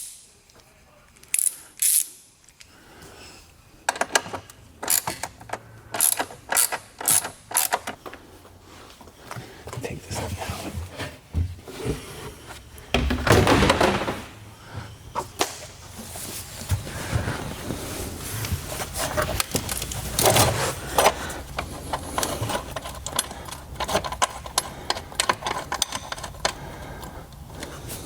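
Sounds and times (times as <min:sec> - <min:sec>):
tools clunking and scraping: 0:03.8 - 0:28.0
loud knocks: 0:12.9 - 0:14.4.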